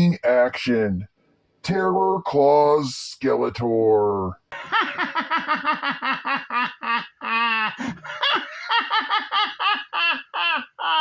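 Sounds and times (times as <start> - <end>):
man's high cartoon cackle: 4.6 - 11.0.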